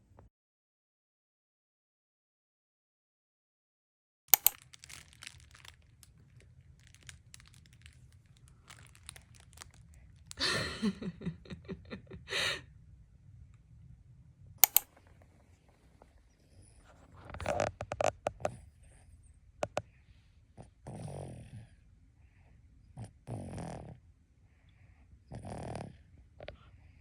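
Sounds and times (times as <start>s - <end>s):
sharp clicks: 4.3s - 6.0s, 14.6s - 15.0s
faint rustling and crinkling: 4.4s - 10.6s, 14.9s - 19.0s.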